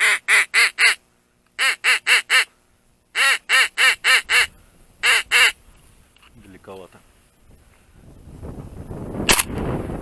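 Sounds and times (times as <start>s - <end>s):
duck quacking: 0.0s - 1.0s, 1.6s - 2.5s, 3.1s - 5.6s.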